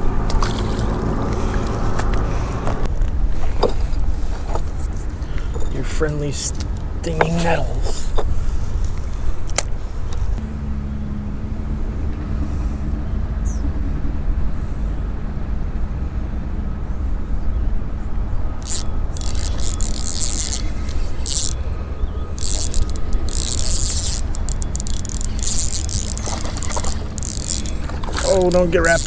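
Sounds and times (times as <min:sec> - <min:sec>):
engine hum: 0:00.0 - 0:29.0
rustling: 0:22.4 - 0:29.0.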